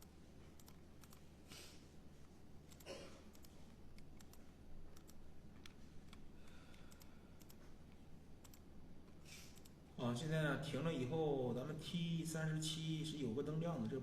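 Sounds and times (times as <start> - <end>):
computer mouse and keyboard clicks: 0.0 - 1.3, 2.7 - 9.8
low steady hum: 0.0 - 14.0.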